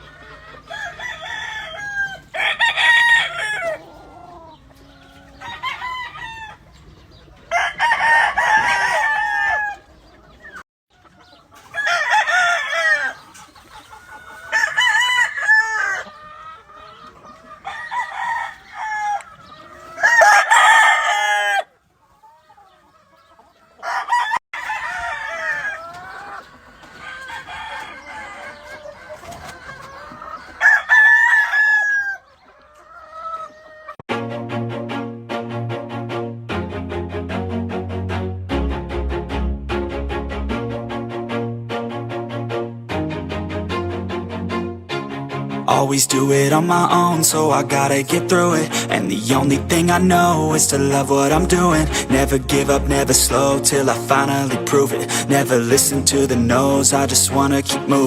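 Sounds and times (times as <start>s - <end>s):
chickens clucking: 0.0s - 34.0s, 45.7s - 58.0s
roosters crowing: 0.0s - 34.0s, 45.7s - 58.0s.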